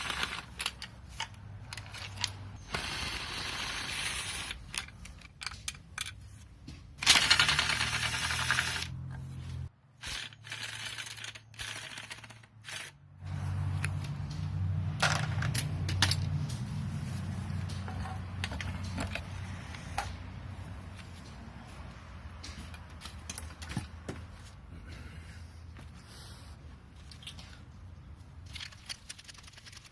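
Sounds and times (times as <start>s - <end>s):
metal tools clinking and scraping: 0.0s - 24.6s
rapid mechanical clatter: 7.0s - 8.9s.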